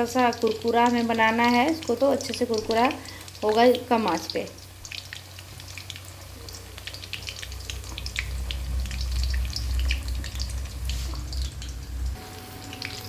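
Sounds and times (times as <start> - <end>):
food deep-frying in oil: 0.0 - 13.0
low rumble: 7.4 - 12.2.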